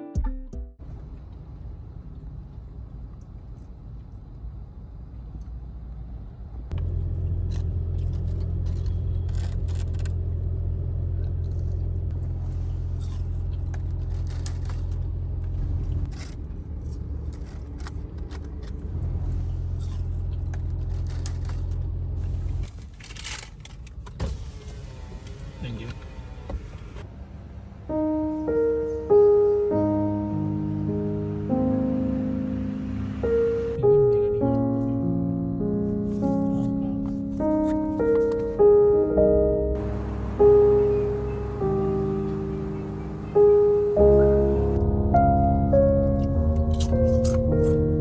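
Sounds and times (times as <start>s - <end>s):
low motor hum: 6.3s - 22.7s, 24.4s - 48.0s
handling clicks and scrapes: 6.8s - 10.4s, 12.5s - 24.2s.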